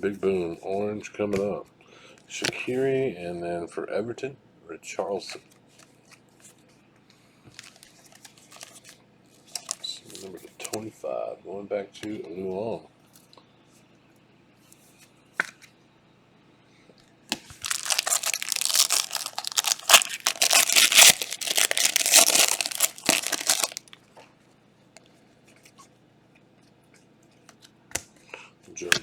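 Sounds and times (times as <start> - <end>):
plastic wrapper tearing and crinkling: 17.6 - 24.0.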